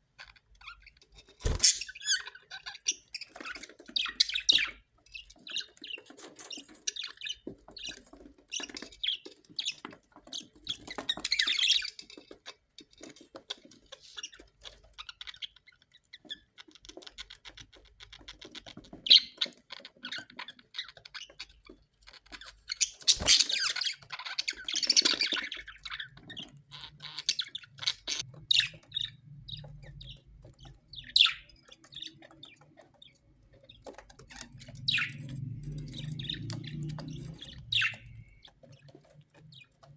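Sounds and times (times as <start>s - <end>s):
parrots chattering: 1.4s - 2.4s, 36.1s - 38.5s.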